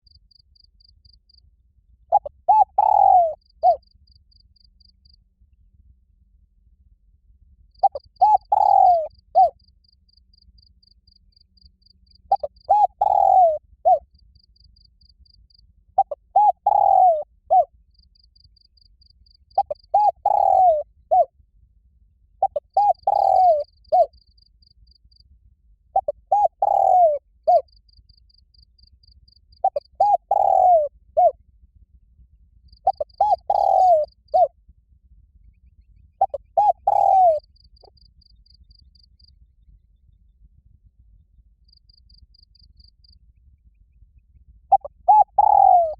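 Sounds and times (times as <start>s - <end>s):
faint insect trill: 0.0s - 5.6s, 7.6s - 40.6s, 41.2s - 45.9s
dove cooing: 2.1s - 3.8s, 7.8s - 9.6s, 12.3s - 14.0s, 16.0s - 17.7s, 19.6s - 21.3s, 22.4s - 24.1s, 26.0s - 27.7s, 29.6s - 31.4s, 32.8s - 34.5s, 36.2s - 37.9s, 44.7s - 45.9s.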